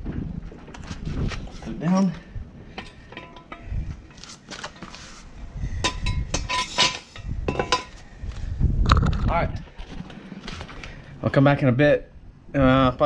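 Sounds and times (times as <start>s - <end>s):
metal jack stand clinking: 5.8s - 8.0s.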